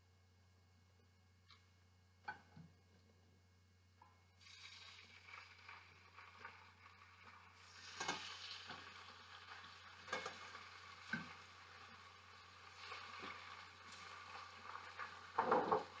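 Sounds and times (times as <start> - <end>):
chicken frying in oil: 4.4 - 16.0
knocks in pan: 10.0 - 11.4, 15.0 - 16.0.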